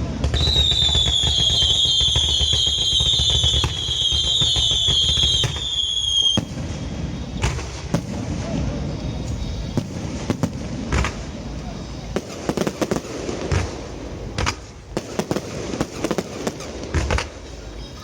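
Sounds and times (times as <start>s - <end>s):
fireworks crackling: 0.0s - 18.0s
fireworks sharp bangs: 0.0s - 18.0s
firework whistle falling: 0.2s - 7.6s.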